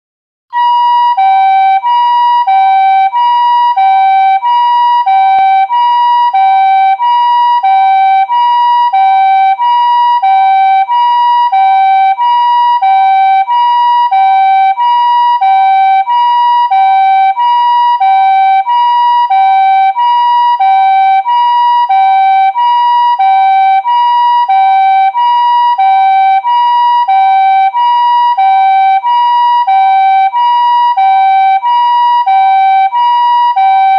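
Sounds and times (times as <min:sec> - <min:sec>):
two-tone ambulance siren: 0:00.5 - 0:33.9.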